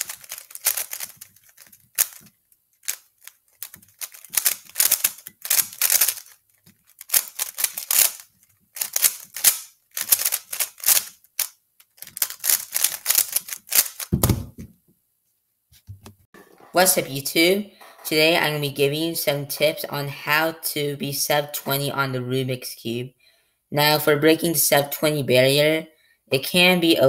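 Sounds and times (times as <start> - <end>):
rapid plastic clicking of cube turns: 0.0 - 14.2
low thud: 14.1 - 14.7.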